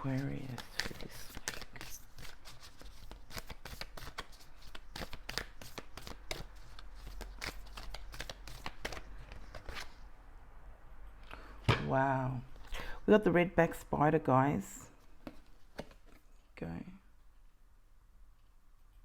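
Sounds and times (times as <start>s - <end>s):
cards being shuffled: 0.0s - 10.0s, 15.0s - 16.3s.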